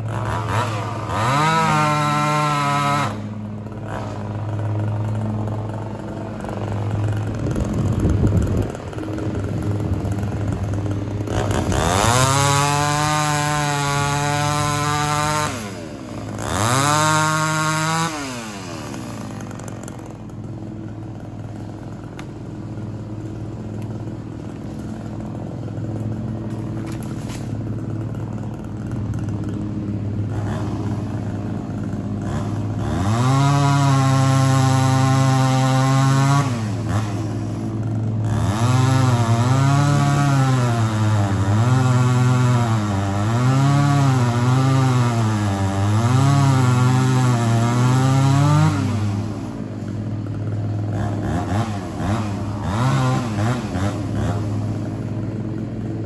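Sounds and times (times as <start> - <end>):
chainsaw engine revving and idling: 0.0 - 56.0.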